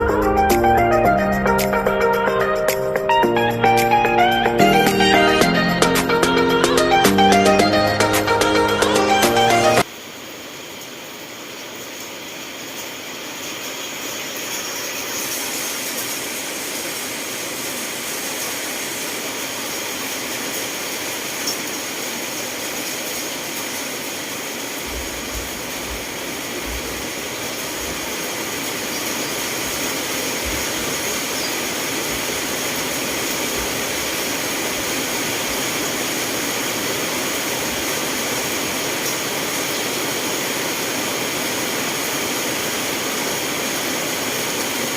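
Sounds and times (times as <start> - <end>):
steady rainfall: 0.0 - 44.9
soft low bumps: 24.9 - 27.0.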